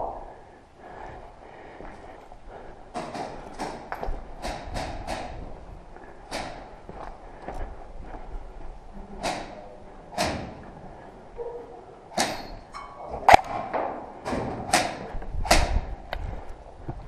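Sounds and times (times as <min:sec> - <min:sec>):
echo off room walls: 0:00.0 - 0:16.8
airsoft rifle shots: 0:03.0 - 0:05.4, 0:14.7 - 0:15.8.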